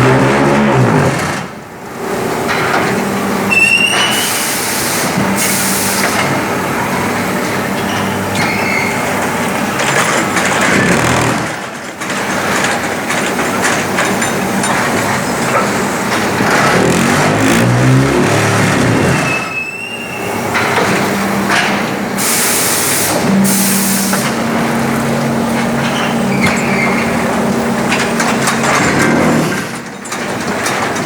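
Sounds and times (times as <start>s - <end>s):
machine mechanical din: 0.0s - 1.6s, 8.3s - 21.9s, 24.2s - 31.0s
high squeal: 3.5s - 4.4s, 7.8s - 9.1s, 17.0s - 20.4s, 25.9s - 27.2s
hiss burst: 4.1s - 6.2s, 22.2s - 24.3s
low machine hum: 14.7s - 19.5s.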